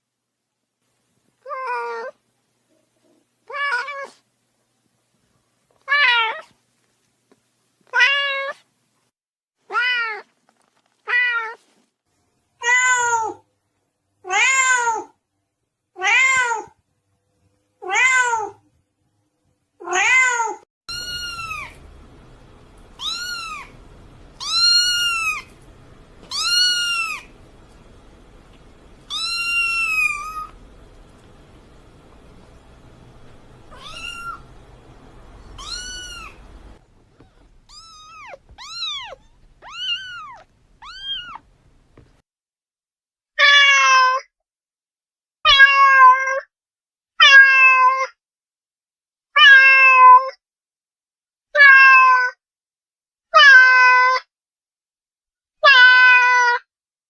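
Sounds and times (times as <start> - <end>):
cat meowing: 1.4 - 2.2, 3.4 - 4.2, 5.8 - 6.6, 7.9 - 8.6, 9.7 - 10.3, 16.0 - 16.8, 19.8 - 21.8, 23.0 - 23.8, 24.4 - 25.6, 26.2 - 27.3, 29.1 - 30.6, 33.6 - 34.6, 35.4 - 41.5, 45.5 - 46.4, 47.2 - 48.1, 49.4 - 50.3, 51.6 - 52.4, 53.4 - 54.2, 55.6 - 56.6
background hiss and hum: 20.9 - 42.2.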